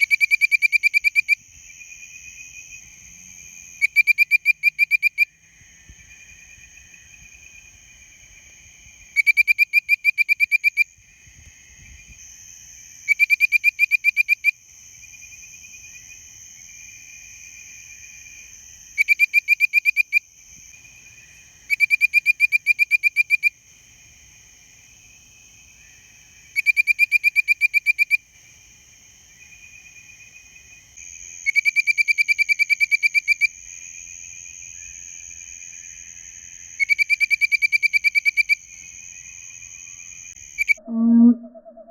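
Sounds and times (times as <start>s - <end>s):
faint frog whistling: 0.0s - 1.4s, 3.7s - 5.3s, 9.1s - 10.9s, 13.0s - 14.5s, 19.0s - 20.2s, 21.7s - 23.6s, 25.8s - 28.2s, 31.4s - 33.5s, 36.8s - 38.6s, 39.8s - 41.9s
tree frog whistled calls: 0.0s - 1.4s, 3.7s - 5.3s, 9.1s - 10.9s, 13.0s - 14.6s, 19.0s - 20.2s, 21.6s - 23.6s, 25.8s - 28.2s, 31.4s - 33.5s, 36.8s - 38.7s, 39.7s - 41.9s
high insect drone: 0.0s - 9.4s, 10.6s - 41.3s.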